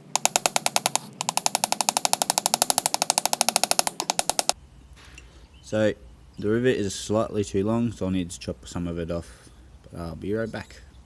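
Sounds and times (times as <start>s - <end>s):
hammer tapping steel: 0.0s - 4.6s.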